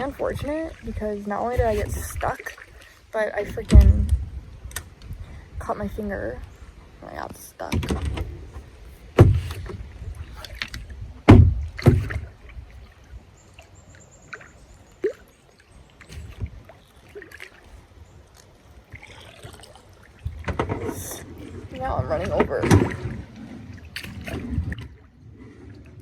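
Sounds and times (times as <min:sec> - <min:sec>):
knocks and thumps in a kayak: 0:00.0 - 0:02.7, 0:03.4 - 0:06.5, 0:07.1 - 0:13.3, 0:16.0 - 0:17.8, 0:18.9 - 0:26.0
loud bumps: 0:11.3 - 0:12.2.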